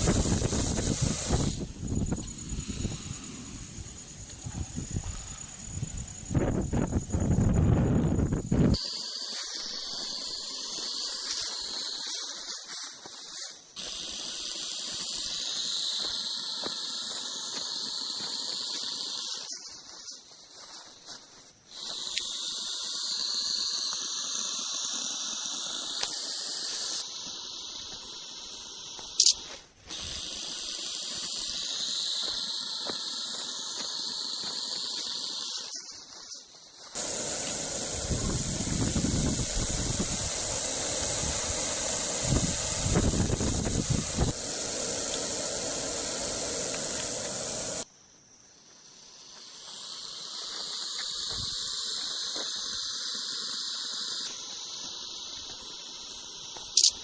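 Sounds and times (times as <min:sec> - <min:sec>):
snake hissing: 0:00.0 - 0:06.3, 0:08.7 - 0:47.9, 0:48.7 - 0:57.0
sharp click: 0:29.0 - 0:29.6, 0:56.6 - 0:57.0.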